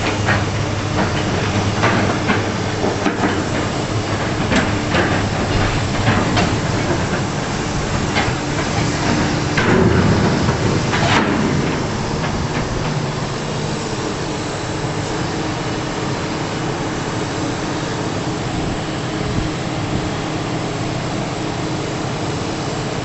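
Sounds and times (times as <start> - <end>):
metallic clanks and knocks: 0.0 - 13.4
heavy diesel engine running: 0.0 - 23.0.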